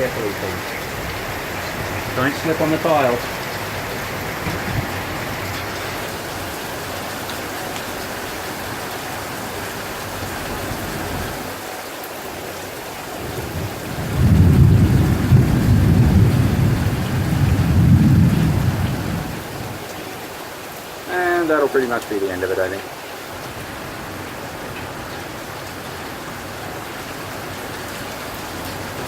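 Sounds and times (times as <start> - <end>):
thunder rumbling: 0.0 - 6.6, 13.2 - 19.8
rain hissing: 0.0 - 29.0.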